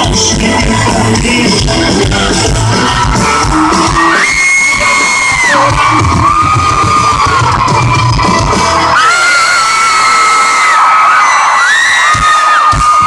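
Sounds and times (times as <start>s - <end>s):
country-rock band playing: 0.0s - 10.1s
crowd whooping and yelling: 0.8s - 13.0s.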